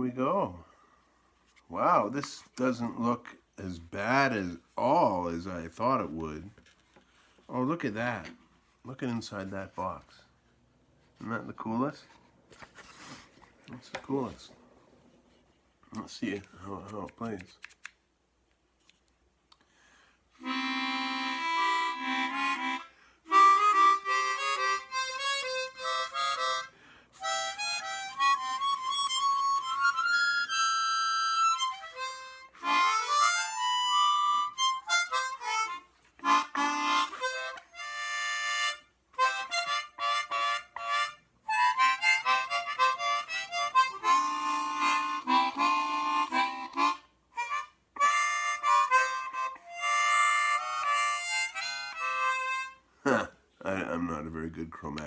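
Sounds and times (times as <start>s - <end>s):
chromatic harmonica playing: 20.4s - 53.3s.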